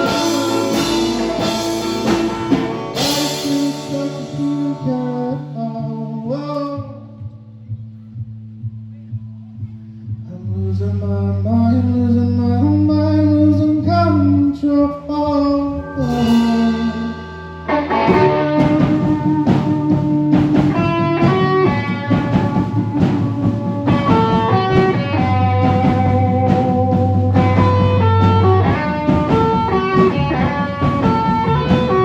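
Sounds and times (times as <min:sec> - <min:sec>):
rock band playing: 0:00.0 - 0:05.7, 0:15.4 - 0:32.0
electric guitar long notes: 0:00.0 - 0:07.2, 0:11.5 - 0:32.0.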